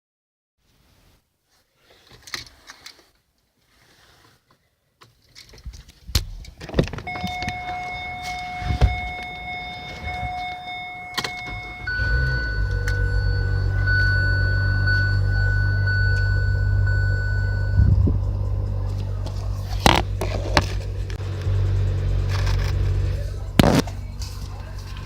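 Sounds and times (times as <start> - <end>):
high-pitched multi-tone whine: 7.0 - 25.0
low hum: 7.1 - 25.0.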